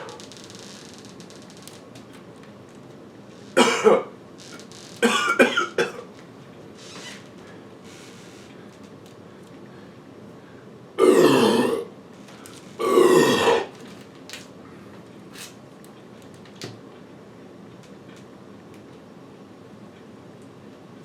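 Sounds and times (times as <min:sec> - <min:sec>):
man burping: 0:11.0 - 0:11.9, 0:12.8 - 0:13.7.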